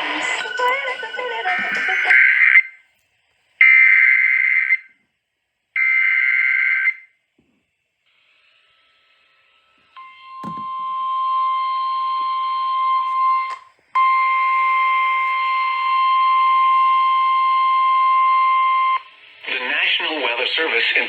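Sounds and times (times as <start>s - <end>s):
steady alert alarm tone: 0.0s - 2.7s, 10.2s - 11.2s.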